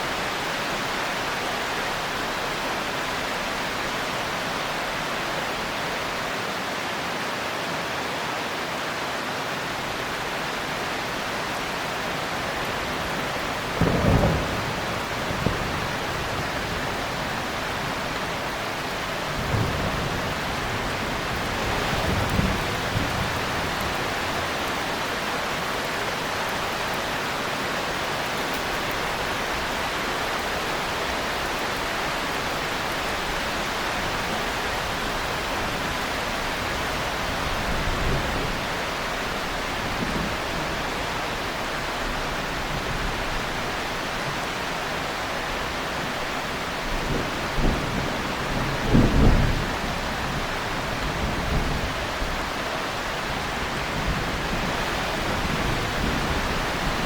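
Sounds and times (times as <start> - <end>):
heavy rain: 0.0 - 57.0
rolls of thunder: 13.7 - 16.4.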